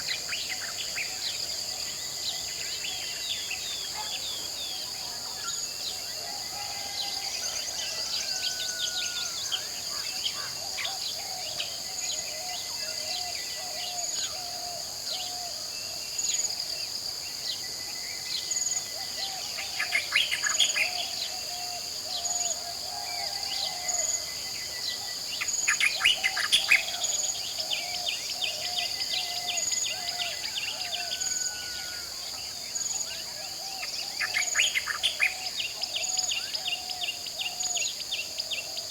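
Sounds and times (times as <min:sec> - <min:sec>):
birds calling and singing: 0:18.9 - 0:31.6, 0:32.8 - 0:38.9.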